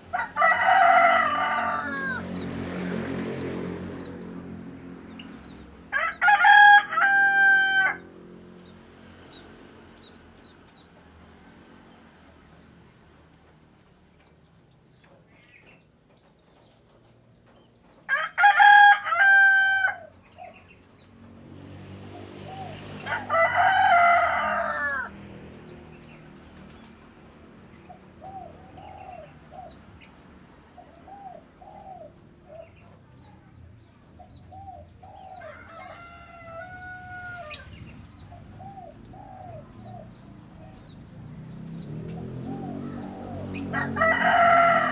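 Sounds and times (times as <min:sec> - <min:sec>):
rooster crowing: 0:00.1 - 0:02.3, 0:05.9 - 0:08.1, 0:18.1 - 0:20.2, 0:23.0 - 0:25.2, 0:35.4 - 0:37.7, 0:43.6 - 0:44.9.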